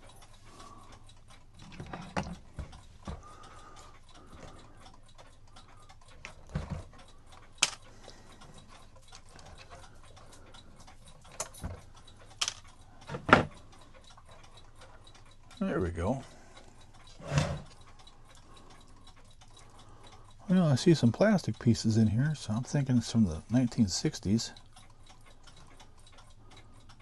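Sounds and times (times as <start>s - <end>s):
faint clock ticking: 0.0s - 27.0s
clock parts knocking and clicking: 1.4s - 15.2s.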